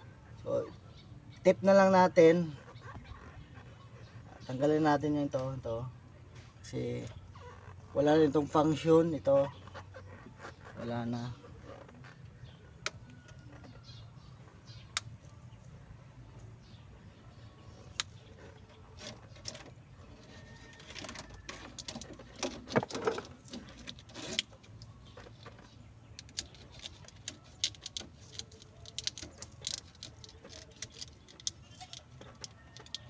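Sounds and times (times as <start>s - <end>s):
hands handling wiring and parts: 17.8s - 33.0s.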